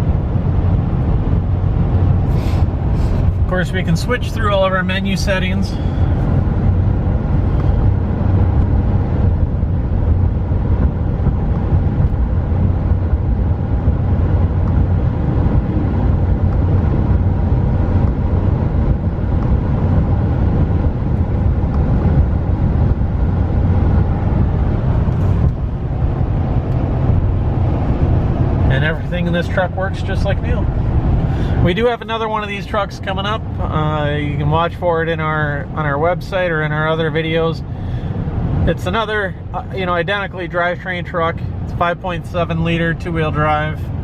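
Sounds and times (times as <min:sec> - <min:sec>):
road and engine drone in cab: 0:00.0 - 0:44.0.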